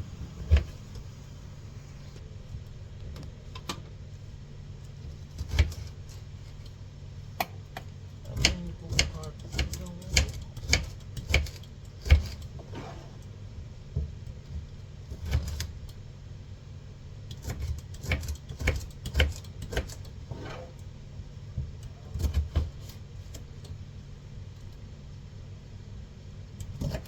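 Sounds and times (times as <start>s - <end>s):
washing machine humming: 0.0s - 10.9s.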